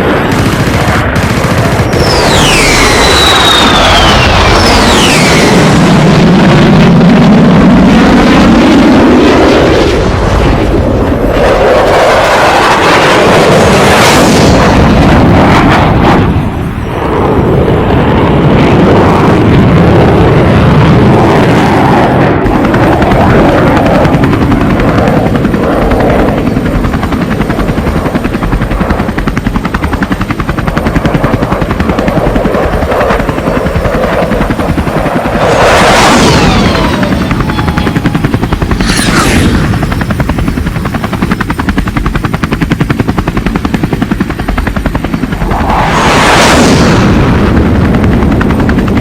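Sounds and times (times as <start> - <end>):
helicopter rotor thudding: 0.0 - 18.1, 22.4 - 45.7.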